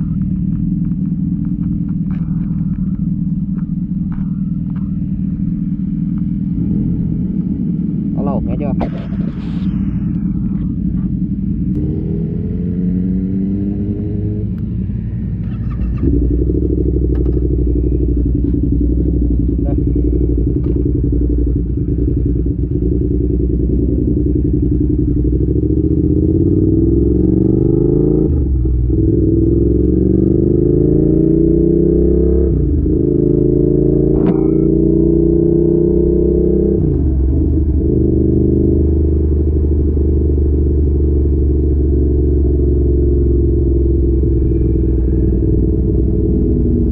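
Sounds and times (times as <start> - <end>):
motorcycle engine accelerating: 0.0 - 46.9.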